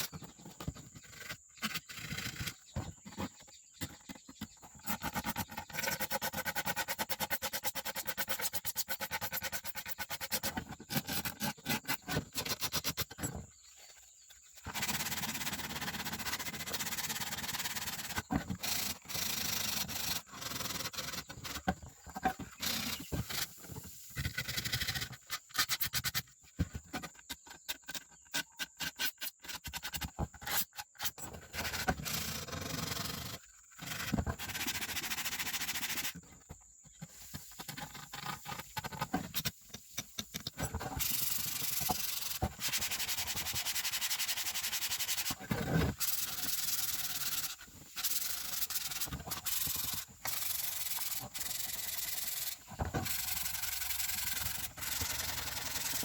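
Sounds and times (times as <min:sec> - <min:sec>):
hand rubbing abrasive surface: 0:36.8 - 0:56.0.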